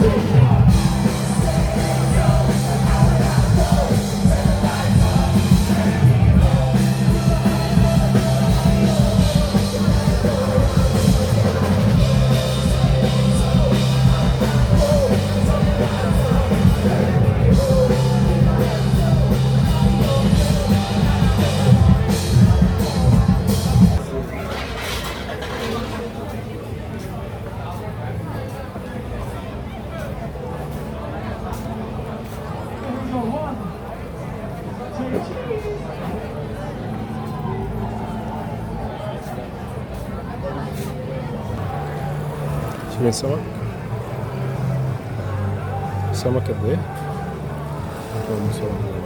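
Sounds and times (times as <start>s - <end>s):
person singing: 0.0s - 24.0s
bass line: 0.0s - 24.6s, 41.4s - 49.0s
rock music: 0.0s - 26.1s
drums: 0.0s - 49.0s.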